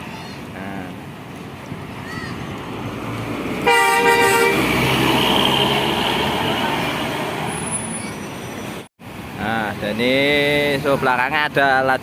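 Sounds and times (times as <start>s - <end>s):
bus passing engine and tyres: 0.0s - 12.0s
bus air horn blast: 3.6s - 4.7s.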